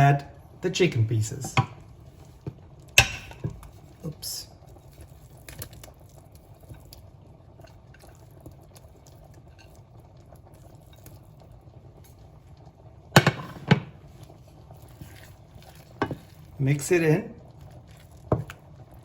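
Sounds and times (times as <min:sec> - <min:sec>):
liquid bubbling on stove: 0:00.0 - 0:19.0
utensil clanking against pan: 0:03.0 - 0:03.7, 0:13.2 - 0:14.0, 0:15.8 - 0:16.3.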